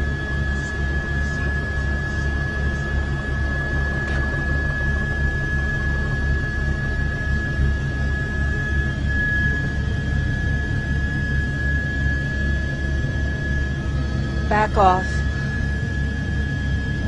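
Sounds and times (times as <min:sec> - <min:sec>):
helicopter rotor throbbing: 0:00.0 - 0:17.0
turbine engine whine: 0:00.0 - 0:17.0.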